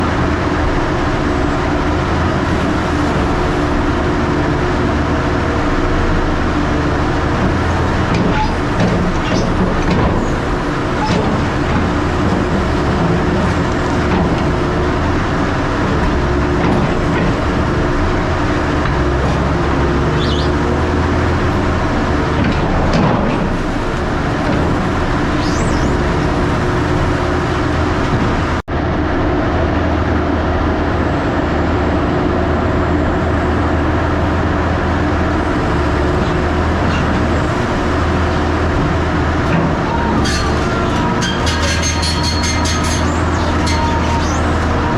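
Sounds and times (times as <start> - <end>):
heavy machinery diesel engine: 0.0 - 44.9
knocks and squeaks: 7.4 - 14.7, 18.8 - 21.0, 22.3 - 27.4, 35.7 - 44.9.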